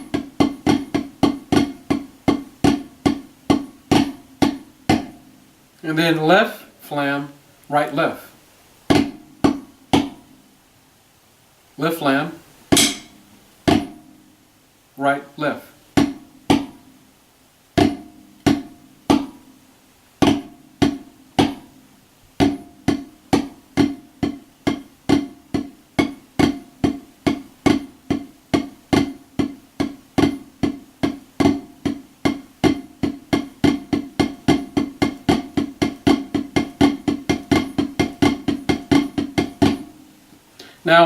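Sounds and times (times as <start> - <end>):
drumsticks on a drum: 0.0 - 5.3, 8.9 - 10.4, 12.7 - 14.1, 16.0 - 16.9, 17.8 - 19.5, 20.2 - 21.8, 22.4 - 40.0.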